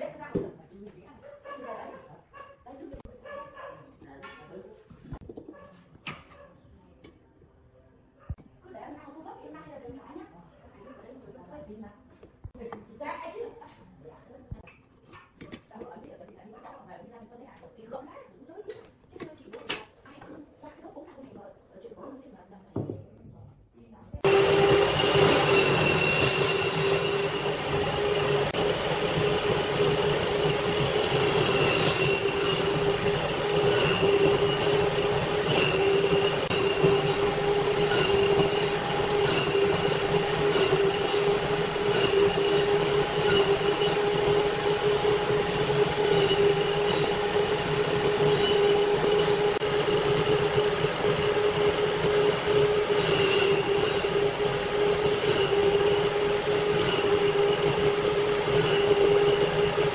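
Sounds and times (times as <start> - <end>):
woodworking machine whining: 24.2 - 59.9.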